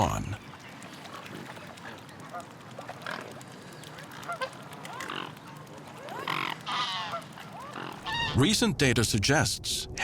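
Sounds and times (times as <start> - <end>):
swans calling: 1.0 - 8.5.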